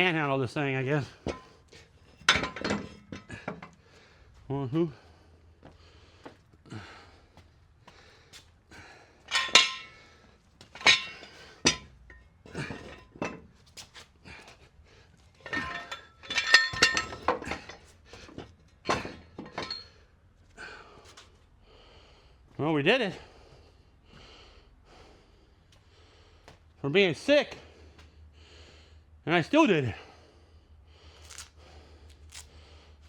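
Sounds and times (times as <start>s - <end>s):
metal clanks and scrapes: 0.9s - 3.8s, 9.3s - 14.1s, 15.3s - 20.0s.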